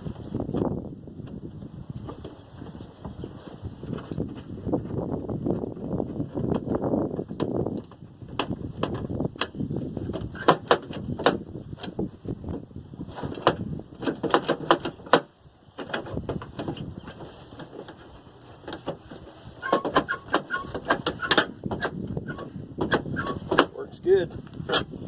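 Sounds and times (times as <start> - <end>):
tailgate latch clicks and clanks: 19.6 - 23.8, 24.7 - 24.9.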